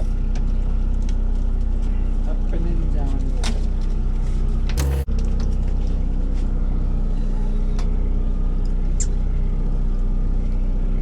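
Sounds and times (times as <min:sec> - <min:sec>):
boat engine droning: 0:04.0 - 0:11.0.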